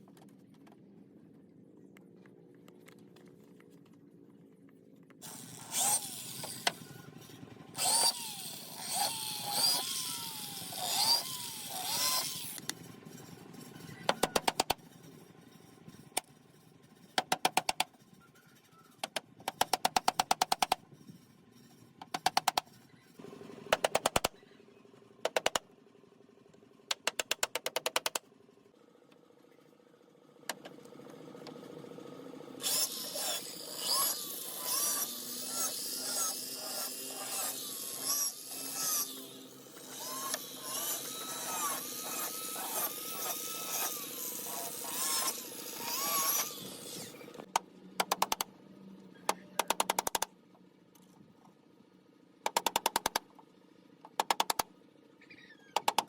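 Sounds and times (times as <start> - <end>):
woodworking tool running: 5.2 - 14.4, 30.4 - 47.5
rapid sharp strikes on wood: 14.1 - 14.8, 17.2 - 18.0, 19.0 - 20.8, 22.0 - 22.7, 23.7 - 24.3, 25.2 - 25.6, 26.9 - 28.2, 47.5 - 48.5, 52.5 - 53.3, 54.1 - 54.7.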